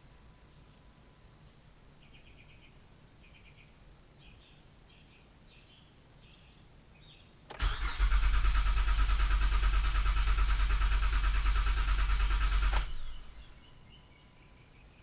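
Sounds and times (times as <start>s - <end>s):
car starter cranking engine: 7.5s - 13.6s.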